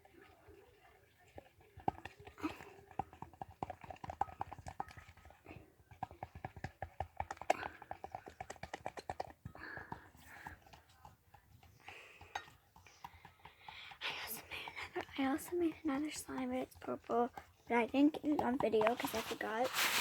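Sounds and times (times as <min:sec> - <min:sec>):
slime squelching by hand: 0:12.9 - 0:20.0.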